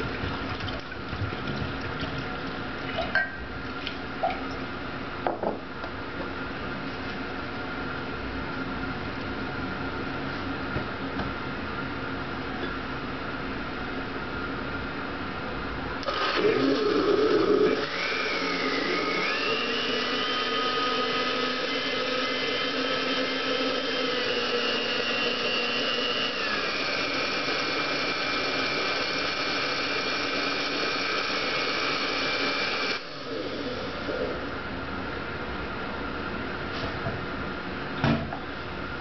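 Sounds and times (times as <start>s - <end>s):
blender motor whine: 16.0s - 34.4s.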